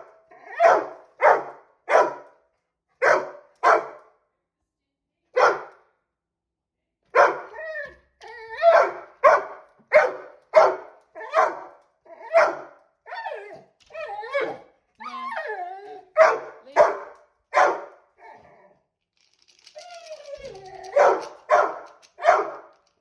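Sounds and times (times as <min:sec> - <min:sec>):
dog barking: 0:00.5 - 0:02.3, 0:03.0 - 0:04.0, 0:05.4 - 0:05.8, 0:07.2 - 0:07.5, 0:08.7 - 0:12.8, 0:16.2 - 0:18.0, 0:20.9 - 0:22.7
dog whining: 0:07.5 - 0:08.9, 0:13.1 - 0:16.2, 0:19.7 - 0:21.2.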